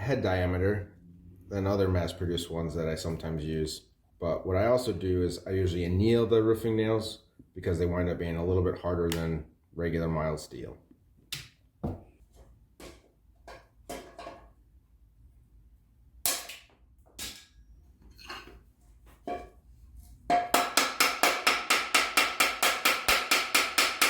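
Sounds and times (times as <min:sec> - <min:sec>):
steel pieces knocking and clicking: 0:16.2 - 0:17.6, 0:20.3 - 0:24.0.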